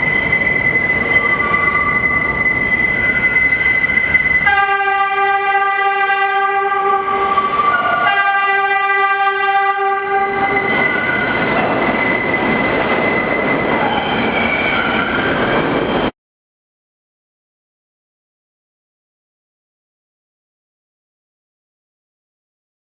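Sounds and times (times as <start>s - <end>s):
train passing with rumble: 0.0s - 16.1s
train horn blasts: 4.4s - 10.7s.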